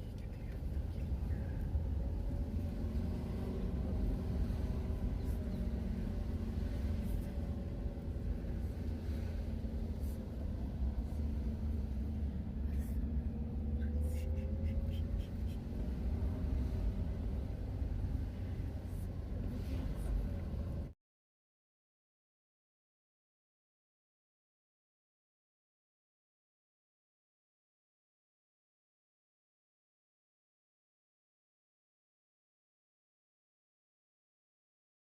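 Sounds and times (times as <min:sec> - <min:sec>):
vehicle engine running: 0:00.0 - 0:21.0.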